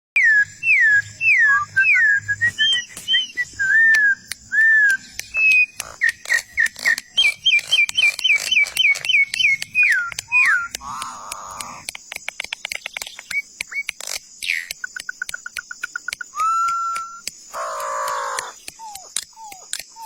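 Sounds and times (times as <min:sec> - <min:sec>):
bird whistling: 0:00.2 - 0:11.7, 0:16.3 - 0:20.0
sharp clicks: 0:02.5 - 0:20.0.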